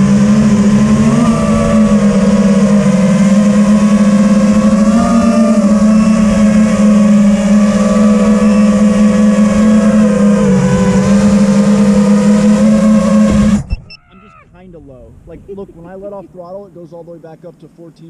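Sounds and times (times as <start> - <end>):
quadcopter motors whining: 0.0 - 14.3.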